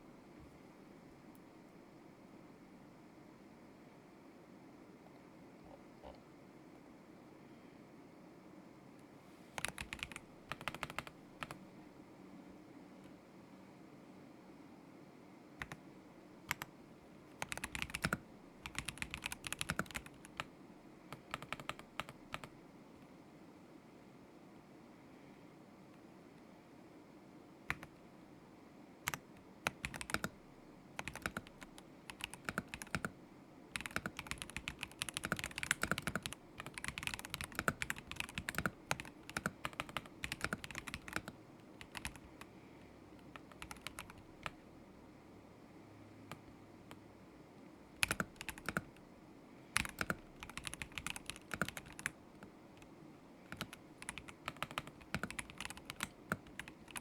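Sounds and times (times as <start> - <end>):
mechanical keyboard typing: 9.6 - 11.6, 15.6 - 15.8, 16.5 - 16.7, 17.4 - 20.5, 21.1 - 22.5, 27.7 - 27.9, 29.0 - 30.4, 31.0 - 42.4, 43.2 - 44.6, 48.0 - 49.0, 49.8 - 52.2, 53.5 - 57.0.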